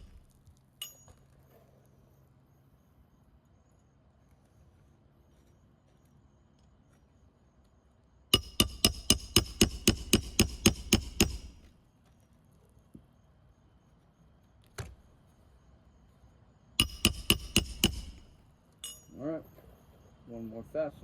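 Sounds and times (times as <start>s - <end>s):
hammer striking nail: 0.0s - 0.2s, 8.4s - 11.7s, 16.8s - 18.4s.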